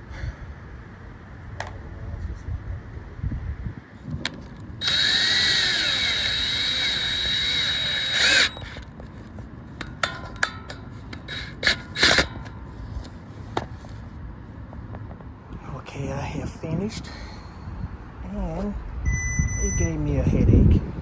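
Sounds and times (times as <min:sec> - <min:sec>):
power drill whining: 0:04.3 - 0:09.2, 0:11.1 - 0:12.5
sharp clicks and knocks: 0:06.8 - 0:12.6.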